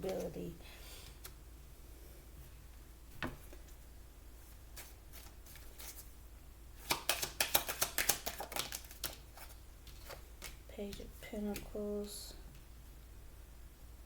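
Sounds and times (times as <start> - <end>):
cards shuffled by hand: 4.7 - 6.1, 6.8 - 11.8
snapping card flicks: 6.8 - 9.2.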